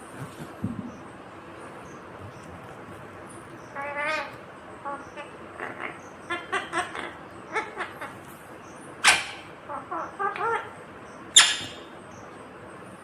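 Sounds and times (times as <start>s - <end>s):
parakeet chattering calls: 3.6s - 12.2s
parakeet screeches: 9.0s - 9.5s, 11.4s - 11.9s.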